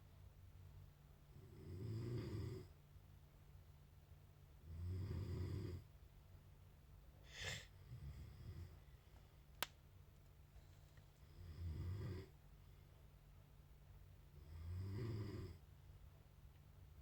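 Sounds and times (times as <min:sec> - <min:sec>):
faint steady low hum: 0:00.0 - 0:17.0
breathy snort: 0:07.3 - 0:07.7.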